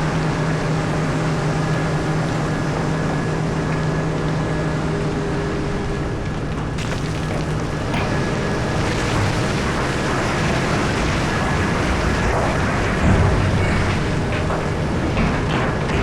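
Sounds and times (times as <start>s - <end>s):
excavator running: 0.0s - 16.0s
rock grinding and crashing: 6.8s - 16.0s.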